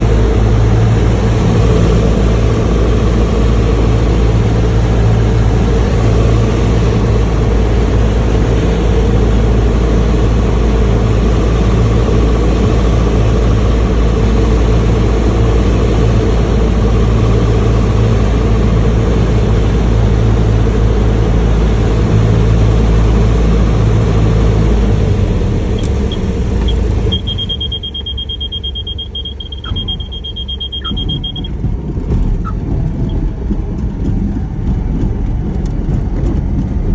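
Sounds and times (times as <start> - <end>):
propeller engine droning: 0.0 - 36.9
high-pitched warning tone: 27.1 - 31.6.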